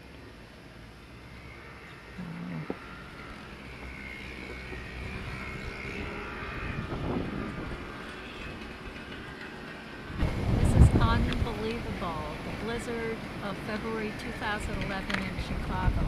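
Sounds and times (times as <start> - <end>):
distant engine droning: 0.0 - 16.0
faint whine: 0.0 - 16.0
low rumble: 10.2 - 13.3.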